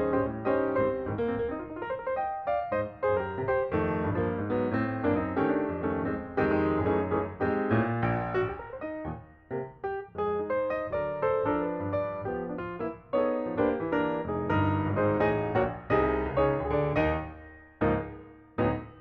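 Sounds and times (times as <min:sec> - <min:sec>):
gentle piano melody: 0:00.0 - 0:19.0.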